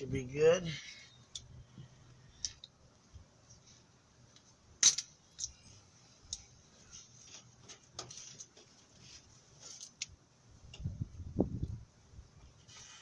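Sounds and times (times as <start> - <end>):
tools and parts clicking: 4.8 - 5.6.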